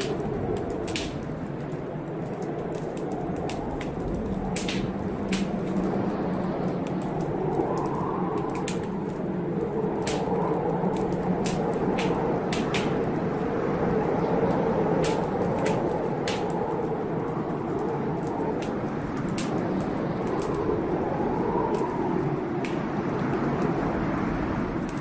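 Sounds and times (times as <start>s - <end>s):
sharp pops and snaps: 0.0s - 13.4s, 14.9s - 16.9s, 17.7s - 20.8s, 21.6s - 23.8s
wood fire crackling: 0.0s - 25.0s.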